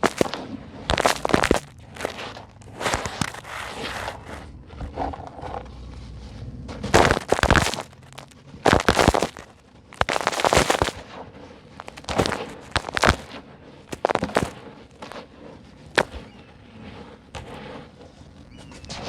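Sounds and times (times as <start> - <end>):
concrete lumps crunching by hand: 0.0 - 19.0.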